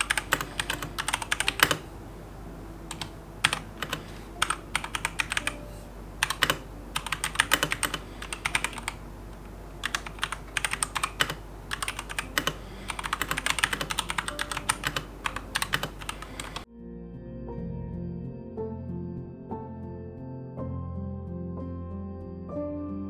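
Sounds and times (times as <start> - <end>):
typing on mechanical keyboard: 0.0 - 1.9, 2.9 - 5.6, 6.2 - 16.7
music: 0.0 - 8.0, 12.3 - 23.0.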